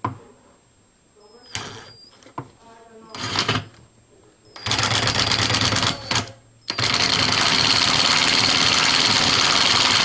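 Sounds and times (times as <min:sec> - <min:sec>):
impact driver hammering: 0:04.6 - 0:10.0.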